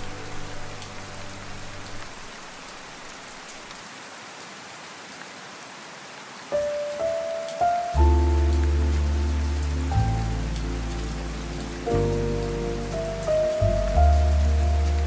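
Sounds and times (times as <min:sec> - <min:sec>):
soft low music: 0:00.0 - 0:02.6, 0:06.6 - 0:15.0
steady rain pattering: 0:00.0 - 0:15.0
jazz piano notes: 0:06.6 - 0:15.0.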